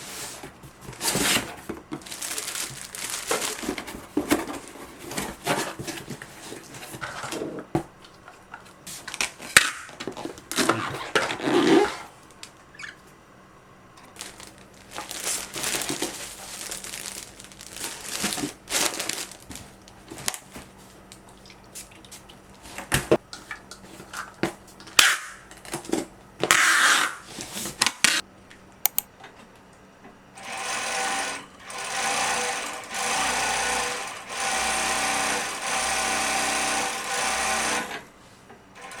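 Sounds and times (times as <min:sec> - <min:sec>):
industrial sewing machine running: 0:30.4 - 0:38.0, 0:38.8 - 0:39.0.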